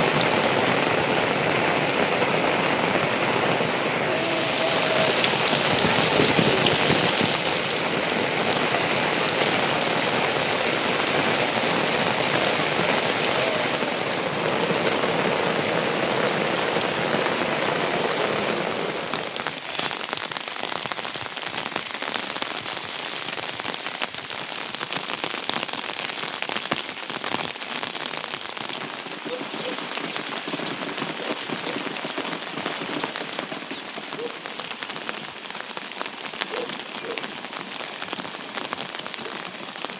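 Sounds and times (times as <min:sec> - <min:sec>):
raindrop clicks: 0:00.0 - 0:20.1, 0:28.6 - 0:39.9
rain falling: 0:00.0 - 0:39.9.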